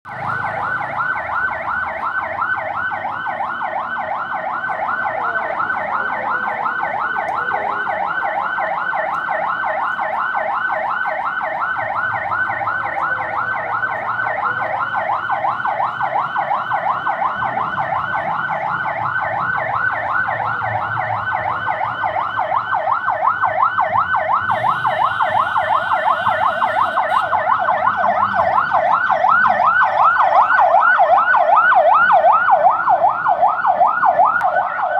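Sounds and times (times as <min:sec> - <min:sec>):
siren yelping: 0:00.1 - 0:34.9.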